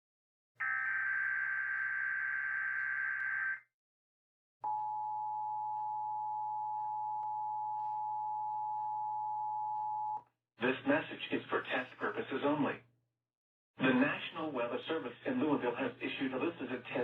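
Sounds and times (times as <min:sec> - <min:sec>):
buzzing digital data screech: 0:00.6 - 0:03.6.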